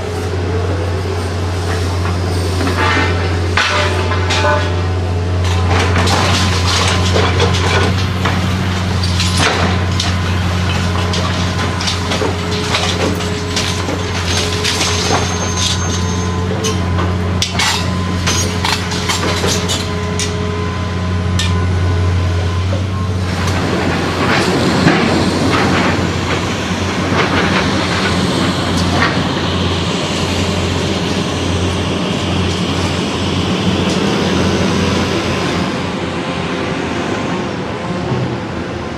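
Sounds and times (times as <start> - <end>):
diesel engine droning: 0.0 - 38.9
falling crunching debris: 5.5 - 16.9.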